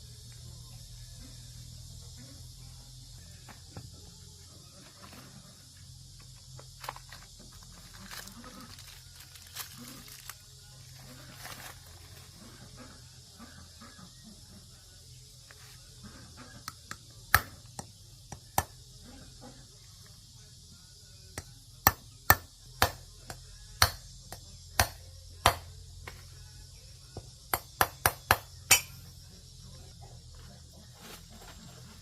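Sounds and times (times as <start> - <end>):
hand tools tapping metal: 27.5 - 29.1.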